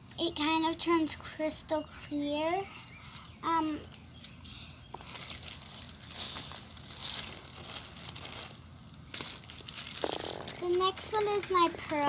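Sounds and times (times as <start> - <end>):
slime crackling in hands: 5.0 - 12.0.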